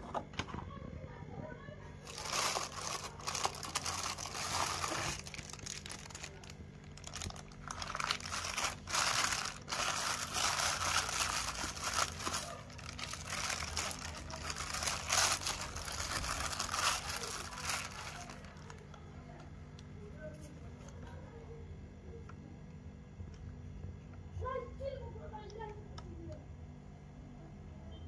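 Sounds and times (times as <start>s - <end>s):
faint low hum: 0.0s - 28.0s
packaging crinkling: 2.0s - 19.0s.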